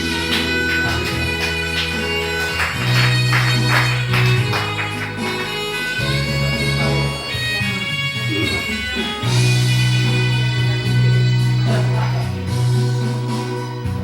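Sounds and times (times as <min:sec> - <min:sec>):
held chords: 0:00.0 - 0:14.0
plucked guitar: 0:00.0 - 0:14.0
steady bass: 0:00.0 - 0:14.0.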